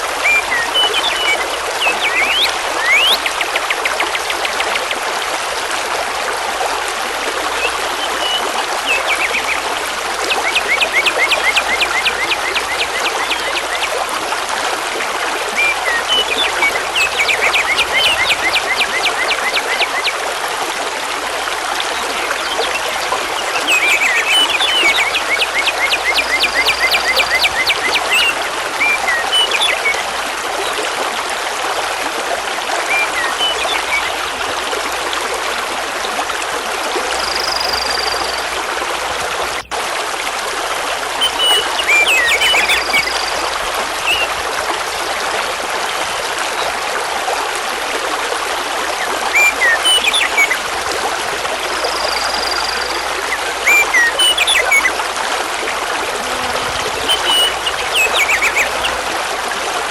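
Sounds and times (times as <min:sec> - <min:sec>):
river rushing over stones: 0:00.0 - 0:37.2, 0:53.1 - 0:59.9
songbirds chirping: 0:56.1 - 0:59.1.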